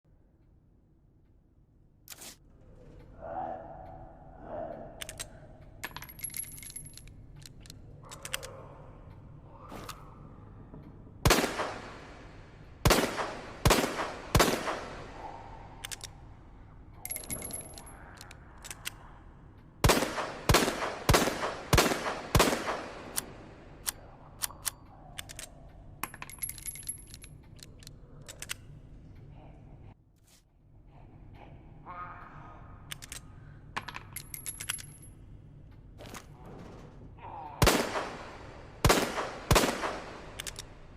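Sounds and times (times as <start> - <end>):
revolver handling clicks: 5.0 - 9.2, 15.8 - 16.3, 17.0 - 19.0, 22.7 - 28.8, 32.9 - 35.8, 39.2 - 40.8
gunshots: 11.2 - 15.2, 19.8 - 23.6, 37.6 - 40.6.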